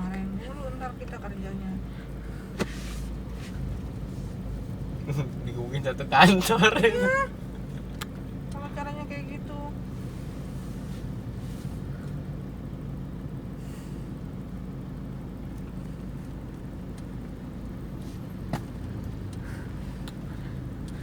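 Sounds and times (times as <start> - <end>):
car engine drone: 0.0 - 21.0
road noise: 0.0 - 21.0.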